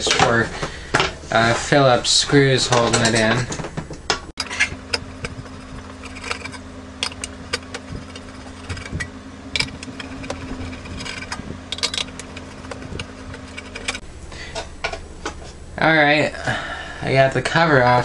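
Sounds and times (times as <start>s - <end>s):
steady low hum: 0.0s - 18.0s
screwdriver clicking and scraping metal: 4.4s - 14.0s.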